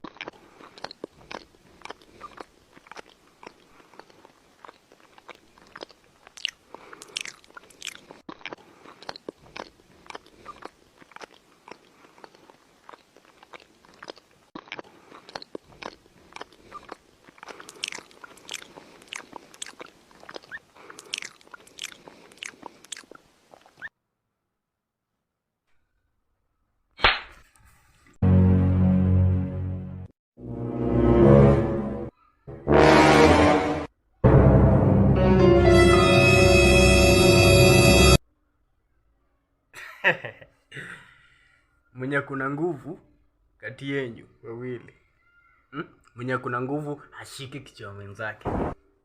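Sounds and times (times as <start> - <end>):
person chewing crunchy food: 0.0 - 23.9.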